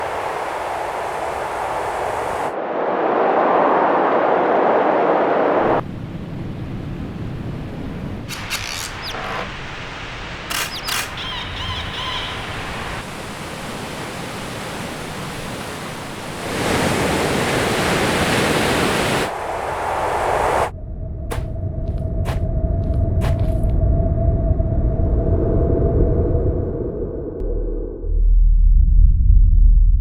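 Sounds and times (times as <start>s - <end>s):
sharp clicks: 8.3s - 9.2s, 10.5s - 11.2s
steady rushing noise: 16.2s - 23.8s.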